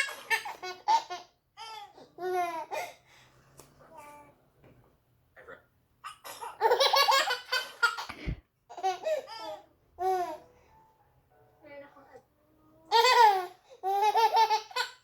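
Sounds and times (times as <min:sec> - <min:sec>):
baby laughing: 0:06.4 - 0:08.1, 0:12.9 - 0:15.0.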